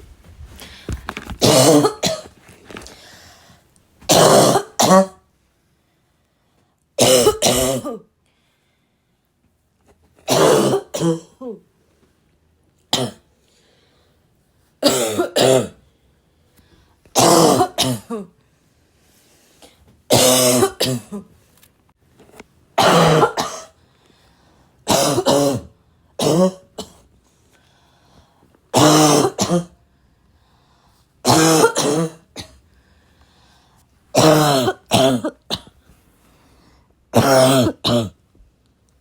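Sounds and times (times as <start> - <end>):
girl's barking cough: 4.1 - 5.2, 7.0 - 8.0, 10.3 - 11.5, 14.8 - 15.8, 17.2 - 18.3, 20.1 - 21.3, 22.8 - 23.8, 24.9 - 27.0, 28.8 - 29.8, 31.2 - 32.6, 34.2 - 35.8.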